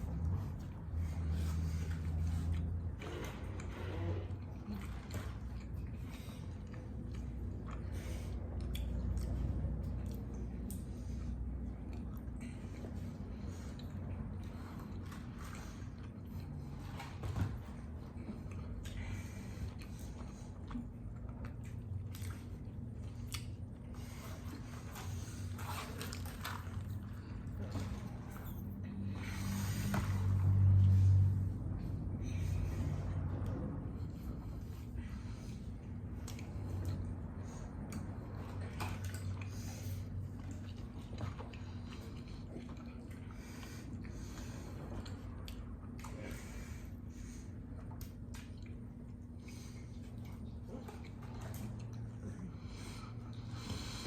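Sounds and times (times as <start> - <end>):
people chewing food: 0.0 - 54.0
steady low hum: 0.0 - 54.0.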